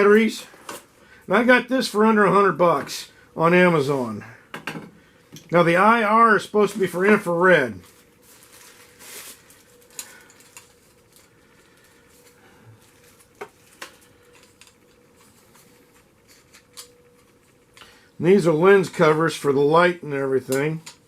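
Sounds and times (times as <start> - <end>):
faint steady hum: 0.0 - 21.0
packaging rustling: 7.7 - 17.0.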